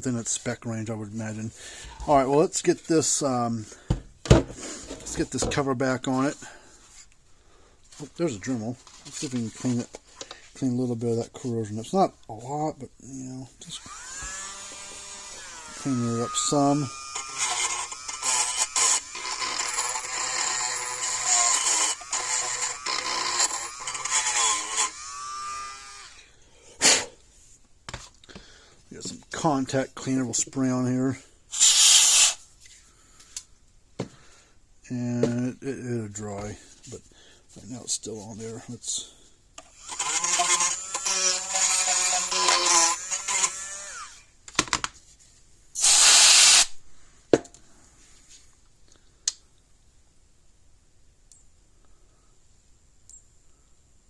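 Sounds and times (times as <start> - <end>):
rotary tool grinding metal: 13.7 - 26.2, 31.6 - 32.4, 39.6 - 44.2, 45.8 - 46.7
rotary tool winding down: 13.8 - 26.2, 31.6 - 32.4, 39.6 - 44.2.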